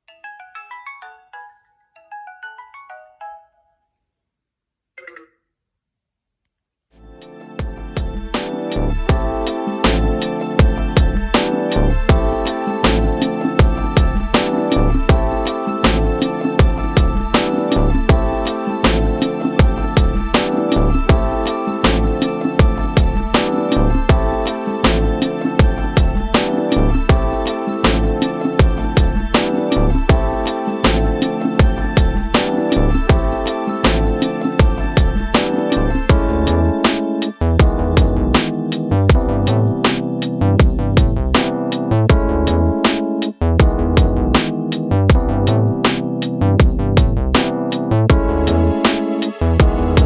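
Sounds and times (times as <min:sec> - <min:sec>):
mobile phone ringtone melody: 0:00.0 - 0:03.9.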